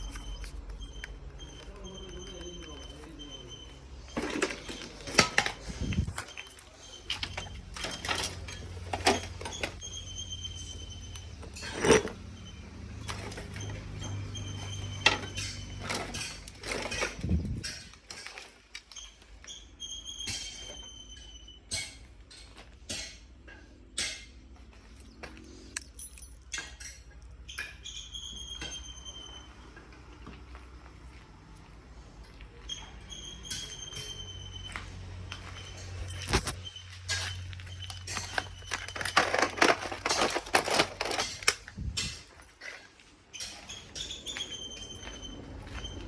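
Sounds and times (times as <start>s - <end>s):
hard objects clinking and knocking: 0.0s - 9.8s, 36.0s - 42.8s.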